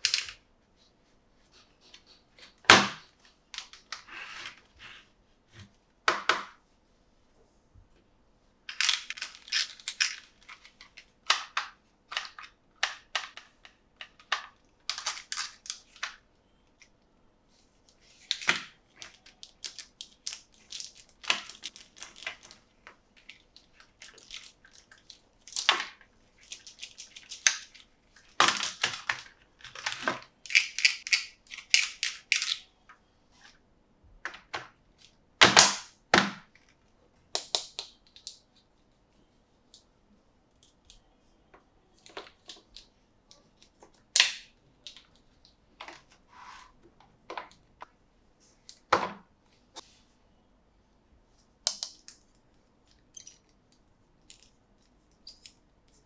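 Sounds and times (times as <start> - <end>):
packaging crinkling and tearing: 18.2 - 22.6.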